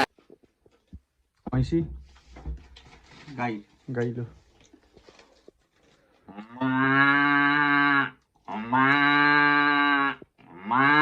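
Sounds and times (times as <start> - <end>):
man imitating cow moo: 6.3 - 11.0.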